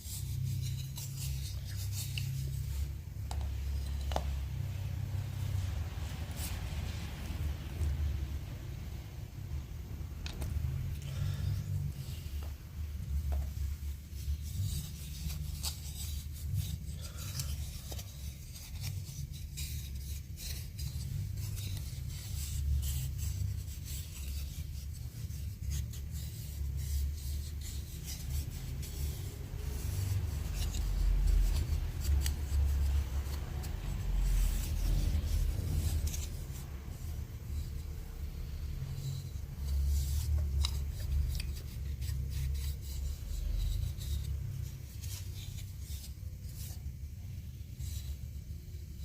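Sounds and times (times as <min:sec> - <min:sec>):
hand scraping wooden spoon: 0:00.0 - 0:08.3, 0:10.3 - 0:48.4.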